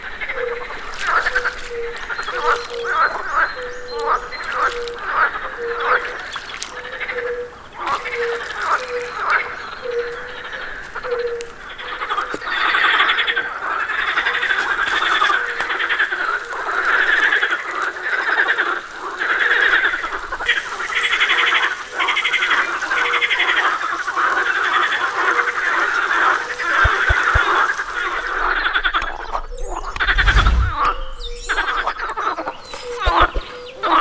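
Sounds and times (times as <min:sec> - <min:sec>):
frogs calling: 0:00.0 - 0:30.2
low thumps: 0:26.9 - 0:33.4.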